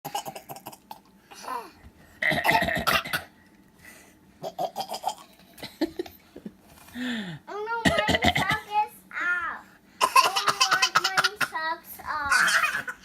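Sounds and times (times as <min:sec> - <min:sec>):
boys fake coughing: 0:07.8 - 0:08.7, 0:10.0 - 0:11.6.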